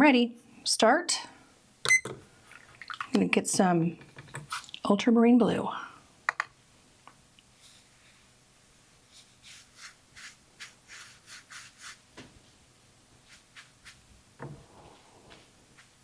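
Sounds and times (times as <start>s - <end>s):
paint brush soft strokes: 7.5s - 8.4s, 9.0s - 12.6s, 13.2s - 16.0s.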